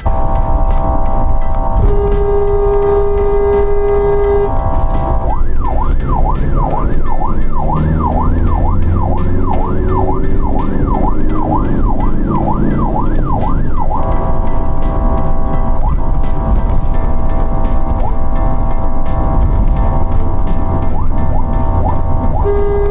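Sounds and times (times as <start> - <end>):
siren yelping: 0.0 - 16.3, 20.9 - 22.9
steady beat: 0.0 - 22.9
steady chord of several tones: 0.0 - 22.9.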